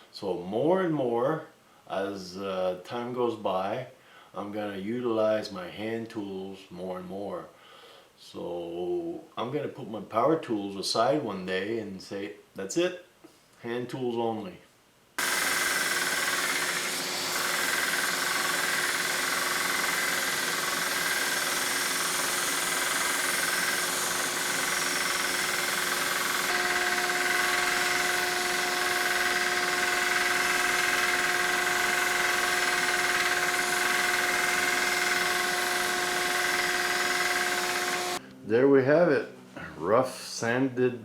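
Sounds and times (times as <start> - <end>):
electric belt sander running: 15.2 - 38.2.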